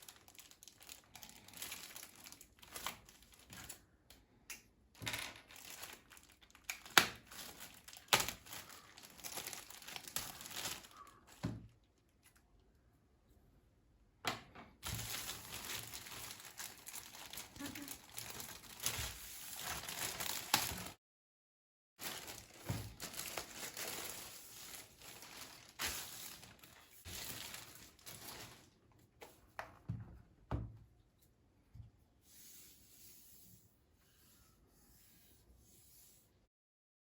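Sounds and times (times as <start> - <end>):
packaging crinkling and rustling: 0.0 - 3.8, 5.0 - 12.4, 14.8 - 21.0, 22.0 - 29.4.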